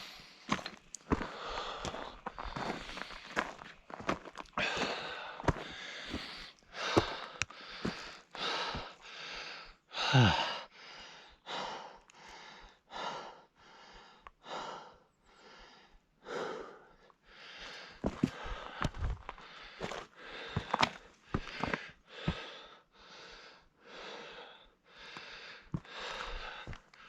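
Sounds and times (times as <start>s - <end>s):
person breathing hard: 0.0s - 27.0s
footsteps clicking: 0.5s - 8.9s, 18.0s - 22.4s
groaning sigh: 10.0s - 10.7s.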